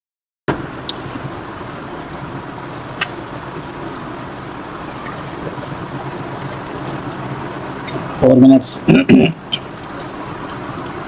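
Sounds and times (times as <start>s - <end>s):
faint low hum: 0.5s - 11.0s
sharp click: 3.0s - 3.2s.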